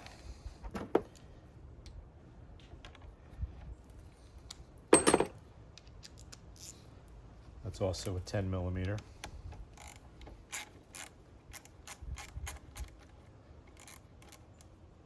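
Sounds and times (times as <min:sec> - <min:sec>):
loud metal clank: 0:05.0 - 0:05.3.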